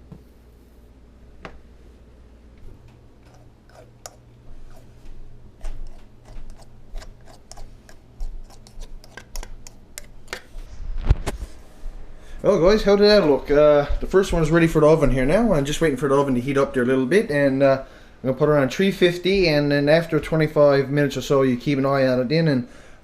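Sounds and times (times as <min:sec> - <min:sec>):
low hum: 0:08.2 - 0:16.0.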